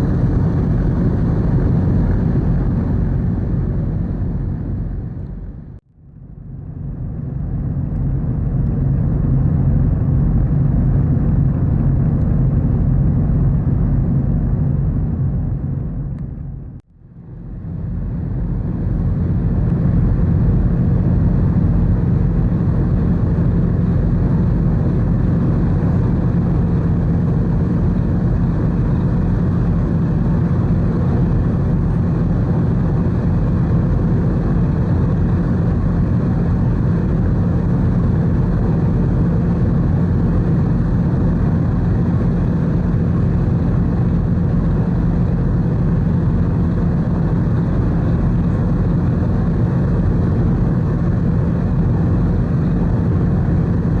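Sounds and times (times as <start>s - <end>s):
faint hum: 0.0s - 54.0s
ship engines rumbling: 11.3s - 54.0s.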